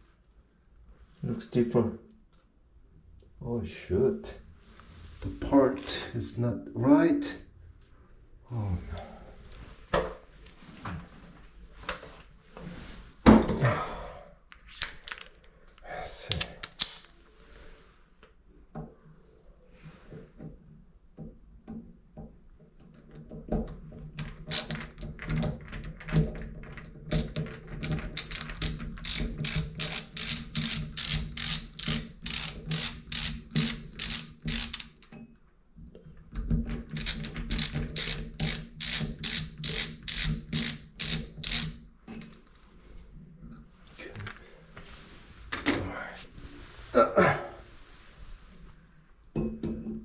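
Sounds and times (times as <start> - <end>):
ratchet wrench clicking: 24.5 - 24.8, 28.2 - 35.0, 37.0 - 41.8.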